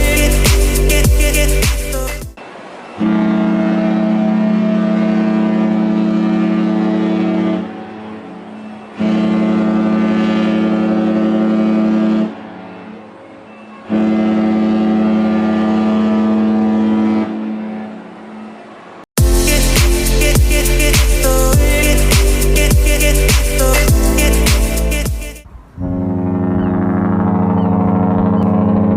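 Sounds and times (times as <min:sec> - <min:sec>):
ship horn blasts: 0:00.0 - 0:28.9.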